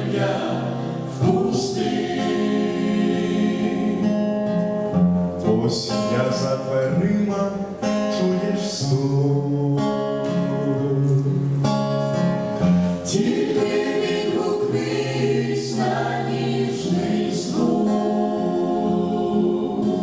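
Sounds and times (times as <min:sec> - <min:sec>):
group singing gospel: 0:00.0 - 0:07.6, 0:12.6 - 0:20.0
acoustic guitar: 0:00.0 - 0:20.0.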